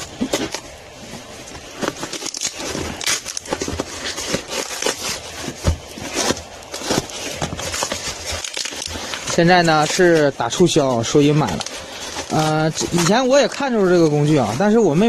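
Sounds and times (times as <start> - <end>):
plastic packaging crinkling: 0.0 - 15.0.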